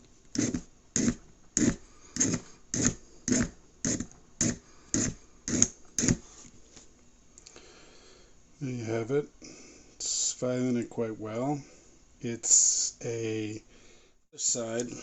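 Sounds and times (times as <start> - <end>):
file rasping on workpiece: 0.4 - 6.2.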